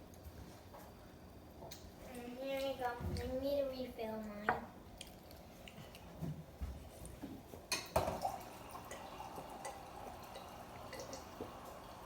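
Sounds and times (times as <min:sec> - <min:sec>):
water pouring: 0:07.8 - 0:12.0.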